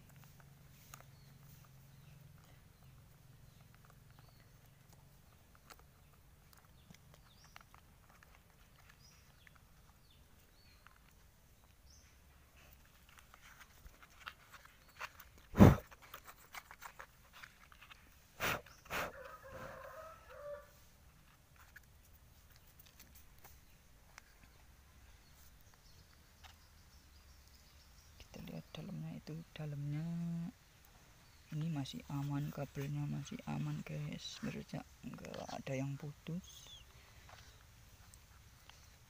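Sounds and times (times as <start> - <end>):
loud thump: 15.6 - 15.8.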